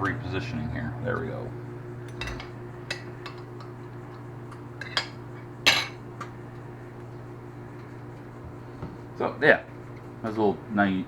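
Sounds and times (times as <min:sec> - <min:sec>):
low hum: 0:00.0 - 0:04.8.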